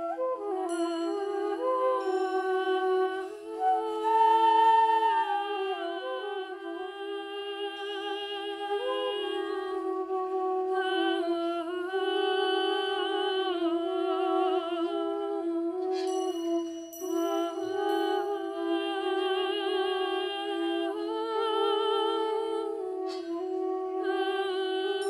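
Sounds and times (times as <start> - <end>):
slow wind instrument melody: 0.0 - 25.0.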